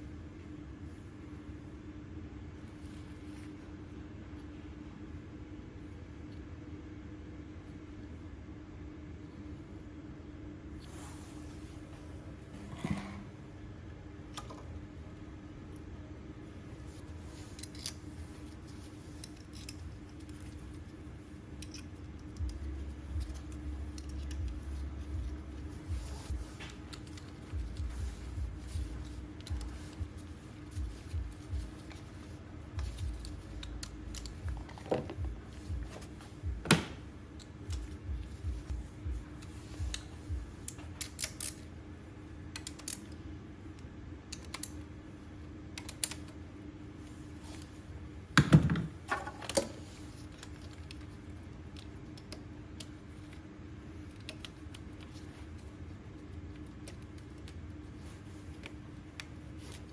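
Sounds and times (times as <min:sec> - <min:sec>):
steady low hum: 0:00.0 - 0:59.9
tools and parts clicking: 0:19.2 - 0:20.7, 0:21.6 - 0:22.6, 0:23.2 - 0:24.8, 0:32.8 - 0:35.2, 0:42.5 - 0:43.2.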